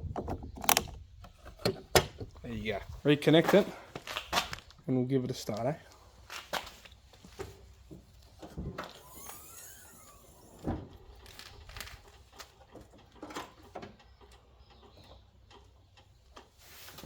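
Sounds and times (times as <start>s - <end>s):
faint squeaky gliding: 8.9s - 11.4s.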